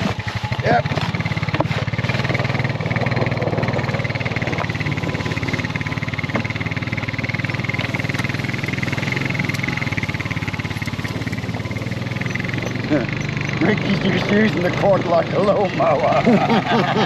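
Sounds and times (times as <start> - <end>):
outboard motor running: 0.0 - 17.0.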